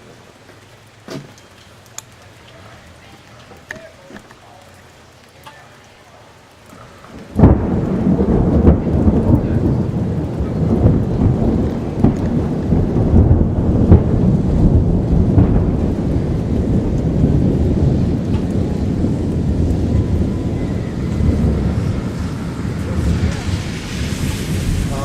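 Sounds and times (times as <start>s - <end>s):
rolling thunder rumble: 6.8s - 25.0s
thunder clap: 7.0s - 25.0s
sharp thunder cracks: 7.1s - 25.0s.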